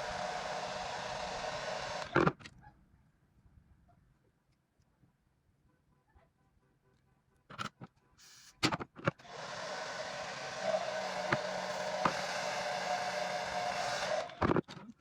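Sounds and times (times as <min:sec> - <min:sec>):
hair dryer blowing: 0:00.0 - 0:02.2, 0:09.2 - 0:14.5.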